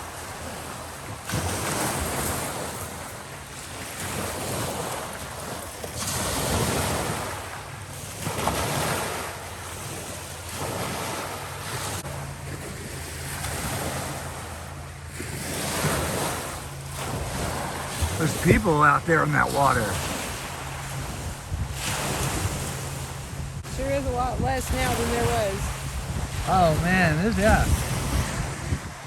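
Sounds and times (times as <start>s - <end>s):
waves washing onto shore: 0.0s - 29.0s
low steady hum: 11.3s - 29.0s
wind buffeting microphone: 15.2s - 29.0s.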